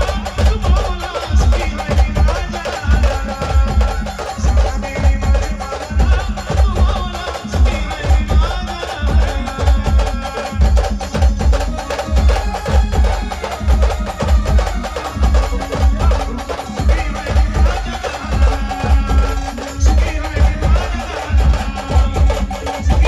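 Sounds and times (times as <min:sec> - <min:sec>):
steady drum beat: 0:00.0 - 0:23.0.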